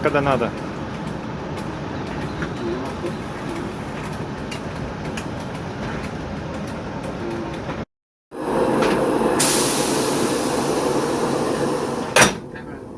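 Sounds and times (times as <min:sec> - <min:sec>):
locomotive running noise: 0:00.0 - 0:07.8, 0:08.4 - 0:12.9.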